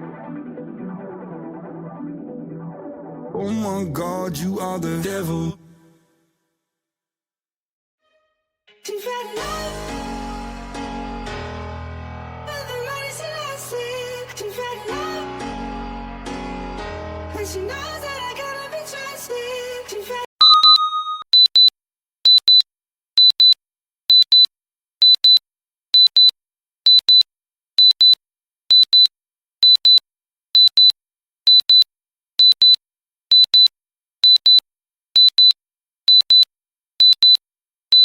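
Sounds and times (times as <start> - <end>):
music: 0.0 - 5.2, 8.0 - 20.3
digital timer alarm beeping: 20.4 - 21.7, 22.3 - 25.4, 26.0 - 30.0, 30.6 - 34.6, 35.2 - 38.0.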